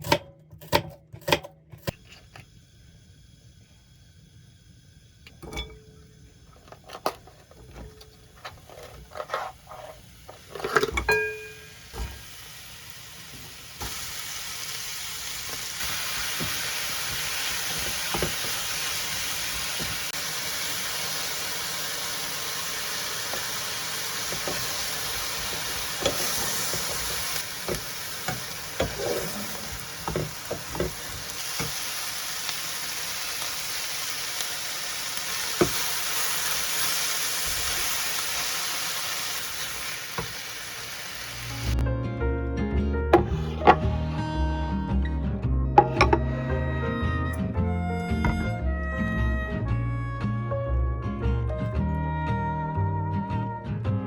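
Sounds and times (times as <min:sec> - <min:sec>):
utensils clinking: 0:05.3 - 0:12.3, 0:24.1 - 0:31.8, 0:45.8 - 0:47.4
food sizzling in a frying pan: 0:07.2 - 0:41.8
stirring knocks in pan: 0:24.2 - 0:31.8.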